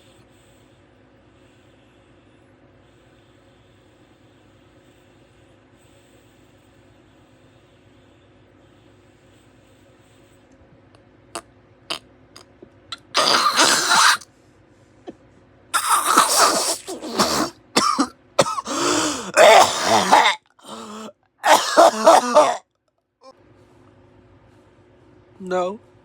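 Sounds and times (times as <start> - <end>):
man coughing: 13.0 - 14.2, 15.8 - 22.6.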